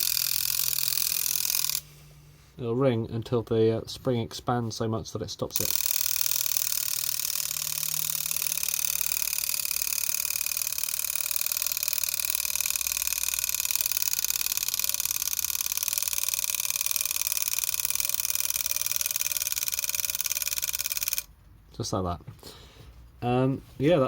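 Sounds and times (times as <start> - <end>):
alarm clock bell ringing: 5.6 - 21.3.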